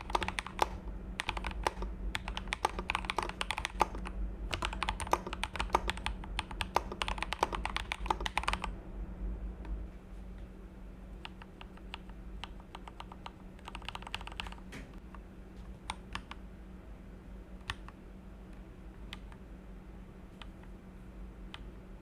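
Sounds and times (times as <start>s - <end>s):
mechanical keyboard keystrokes: 0.0s - 8.7s, 11.2s - 14.7s
faint steady hum: 0.0s - 22.0s.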